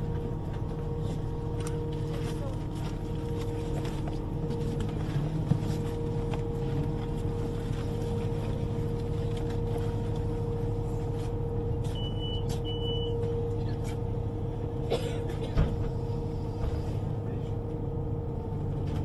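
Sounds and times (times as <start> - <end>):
vehicle motor hum: 0.0 - 14.8.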